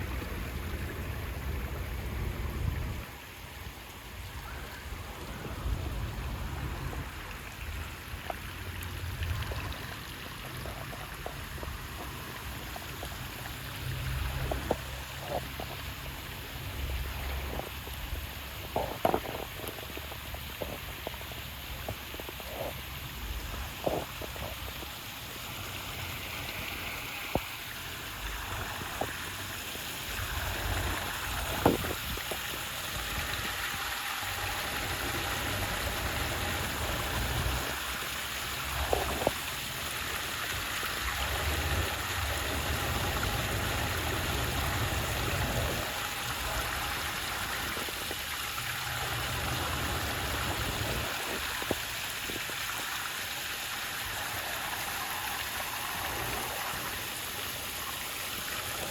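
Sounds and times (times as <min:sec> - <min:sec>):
waterfall rushing: 0:21.4 - 0:58.9.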